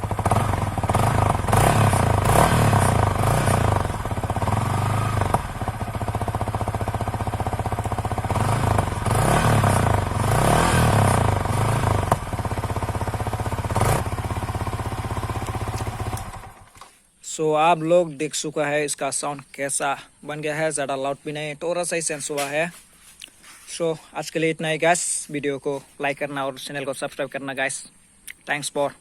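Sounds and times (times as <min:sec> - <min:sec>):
motorcycle engine revving: 0:00.0 - 0:16.9.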